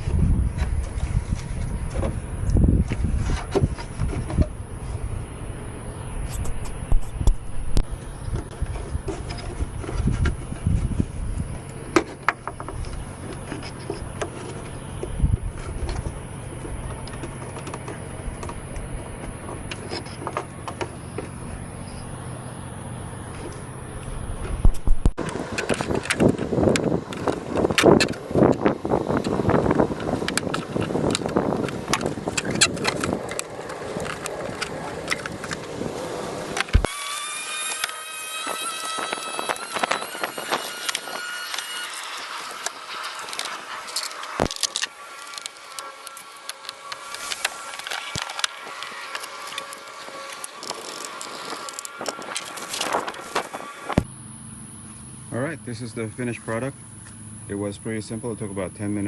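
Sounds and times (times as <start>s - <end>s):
low steady rumble: 0.0s - 36.9s, 52.6s - 59.0s
plastic parts clicking and rattling: 25.5s - 35.7s, 42.6s - 53.5s
steady high tones: 34.5s - 56.8s.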